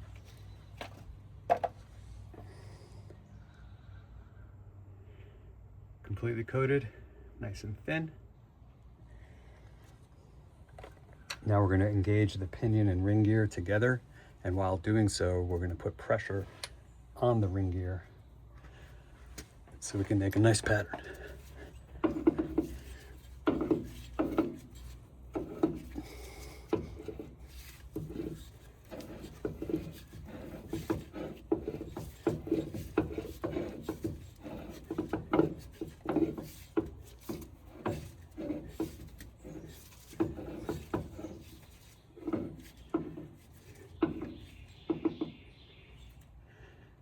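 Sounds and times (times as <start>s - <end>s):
gears rubbing and grinding: 19.9s - 44.7s.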